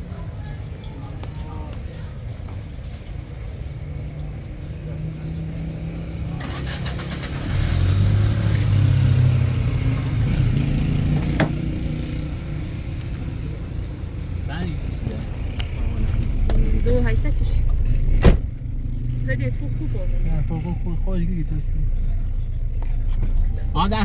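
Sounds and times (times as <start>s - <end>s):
low motor hum: 8.0s - 24.0s.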